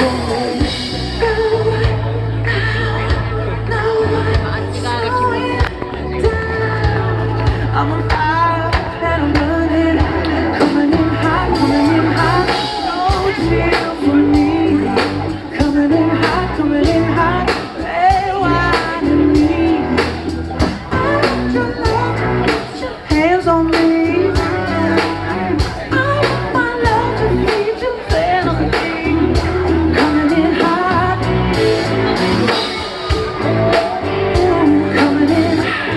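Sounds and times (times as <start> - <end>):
man singing: 0.0 - 35.9
rock band playing: 0.0 - 35.9
steady drum beat: 0.0 - 35.9.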